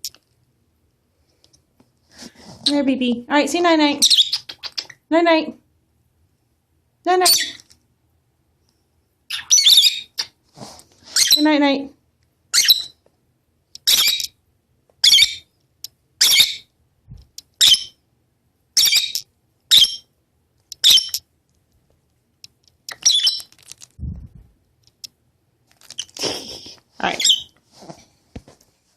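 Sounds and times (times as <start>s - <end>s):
lovebirds chirping: 3.9s - 5.0s, 7.2s - 7.6s, 9.3s - 10.4s, 13.8s - 14.4s, 15.0s - 15.5s, 16.2s - 16.7s, 17.5s - 18.0s, 18.8s - 20.1s, 20.7s - 21.3s, 22.8s - 23.8s, 25.8s - 27.6s.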